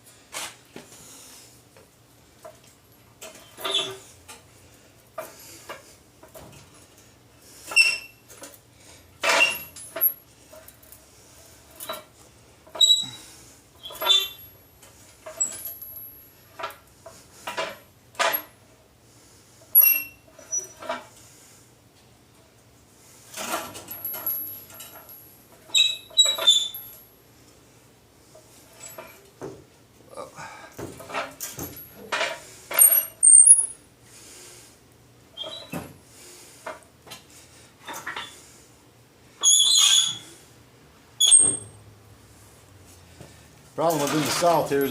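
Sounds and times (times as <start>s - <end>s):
metal squeaks: 3.3s - 4.1s, 7.6s - 8.3s, 9.2s - 10.2s, 12.7s - 14.6s, 15.2s - 15.8s, 19.8s - 20.9s, 25.7s - 27.0s, 35.4s - 35.8s, 39.4s - 40.4s, 41.2s - 41.8s.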